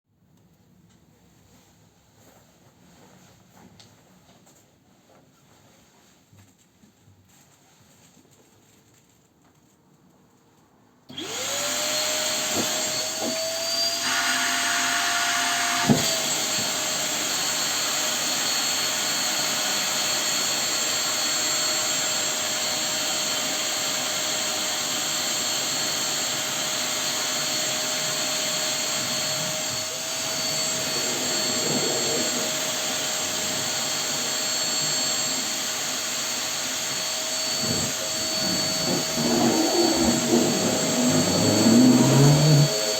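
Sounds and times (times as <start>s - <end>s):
vacuum cleaner motor whining: 11.1s - 42.9s.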